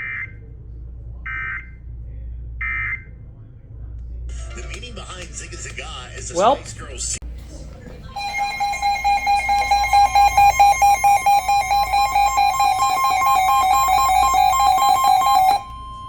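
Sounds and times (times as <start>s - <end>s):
distorted two-tone alert signal: 8.2s - 16.0s.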